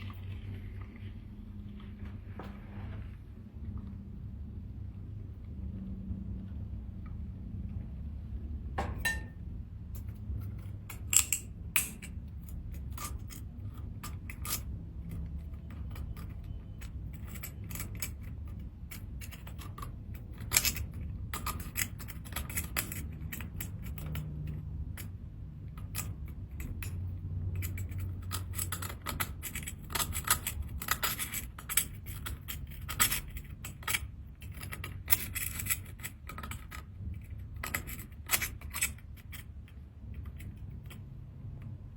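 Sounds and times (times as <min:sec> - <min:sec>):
low steady hum: 0:00.0 - 0:41.9
shells clicking and scraping: 0:09.9 - 0:41.8.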